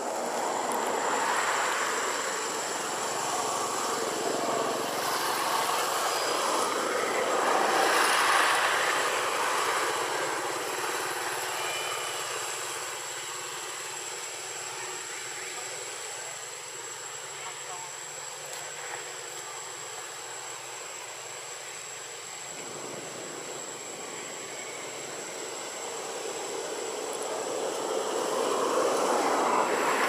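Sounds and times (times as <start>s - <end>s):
thin high whine: 0.0s - 30.0s.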